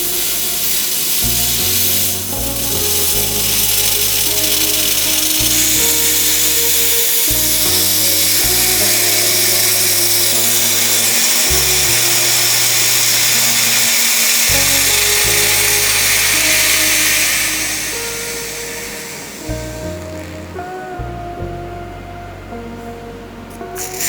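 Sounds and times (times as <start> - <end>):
hot iron sizzling on ice: 0.0 - 20.4, 23.8 - 24.0
background music with bass line: 0.0 - 24.0.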